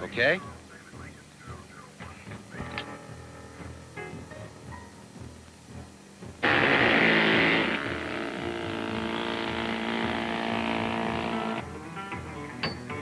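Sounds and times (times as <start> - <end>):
steady mechanical drone: 4.6 - 12.0
loud hissing rush: 6.4 - 11.6.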